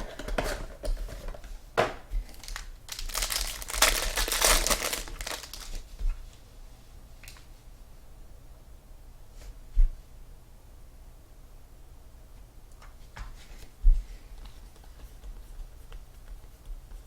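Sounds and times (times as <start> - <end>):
plastic wrapping crinkling and tearing: 2.2 - 5.9.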